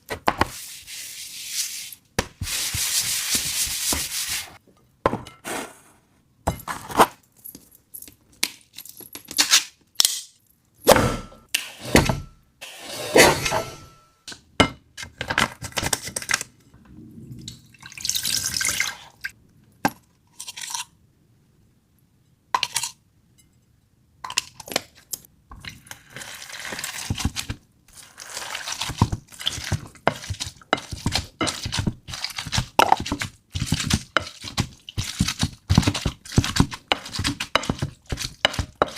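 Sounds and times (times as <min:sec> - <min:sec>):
dishes and utensils clinking: 0:13.1 - 0:14.8
liquid pouring and dripping: 0:17.3 - 0:19.3.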